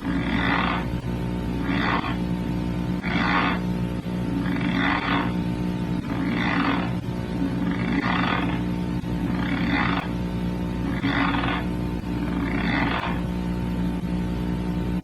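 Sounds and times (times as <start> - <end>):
steady electrical hum: 0.0 - 15.0.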